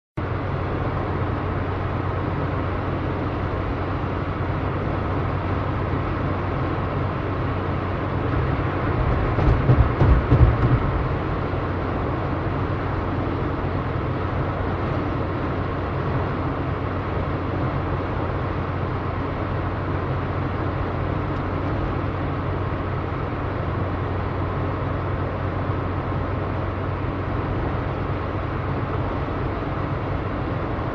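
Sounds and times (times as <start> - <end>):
car engine hum and road noise: 0.2 - 30.9
low thumps: 8.5 - 11.4.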